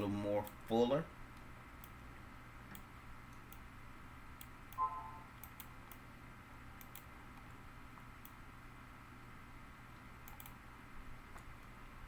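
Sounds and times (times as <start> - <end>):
computer mouse clicking: 4.4 - 4.8, 5.4 - 6.0, 6.8 - 8.4, 10.2 - 10.6, 11.3 - 11.8
pitched blip: 4.8 - 5.3.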